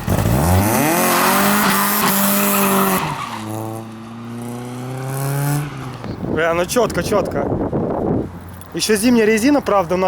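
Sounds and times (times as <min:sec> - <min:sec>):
tyres squealing on asphalt: 0:00.0 - 0:04.4
car engine revving: 0:00.0 - 0:06.4.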